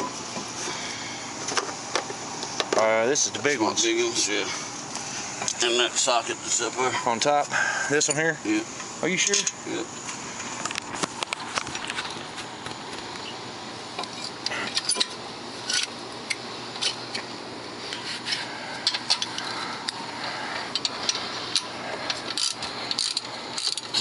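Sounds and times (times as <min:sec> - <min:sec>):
steady background hiss: 0:00.0 - 0:24.0
metal tools clinking and scraping: 0:14.0 - 0:16.0, 0:17.9 - 0:20.0, 0:20.6 - 0:24.0.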